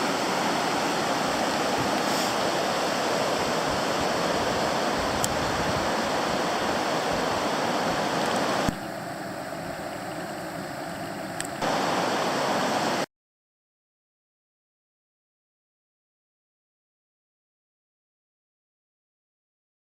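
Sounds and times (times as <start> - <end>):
floodwater roaring: 0.0 - 13.1.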